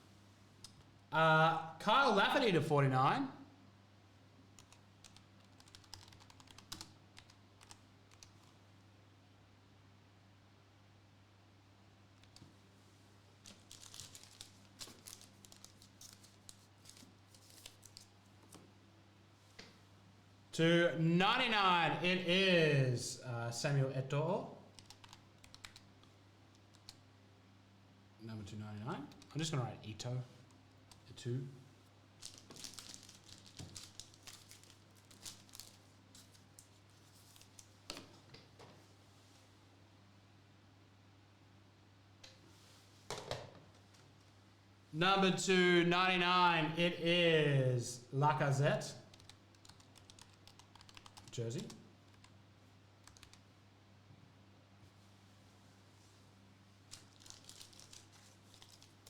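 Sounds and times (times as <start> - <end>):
plastic wrappers crinkling: 13.4 - 18.2, 32.2 - 37.8, 56.9 - 59.0
cards and paper rustling: 13.4 - 18.6, 32.2 - 38.1, 56.9 - 59.0.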